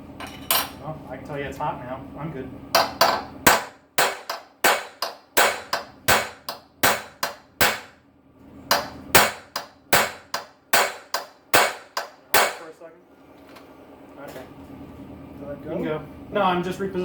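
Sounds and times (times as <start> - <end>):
hammer tapping on metal punch: 2.8 - 8.0, 8.7 - 12.7.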